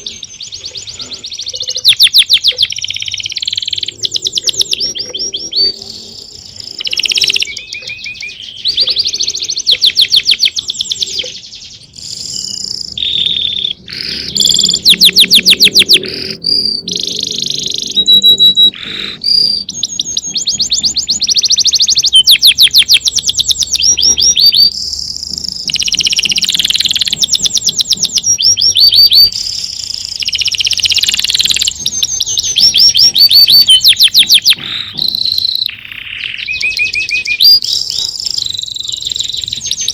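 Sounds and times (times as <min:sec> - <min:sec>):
songbird singing trills: 0:00.0 - 0:39.9.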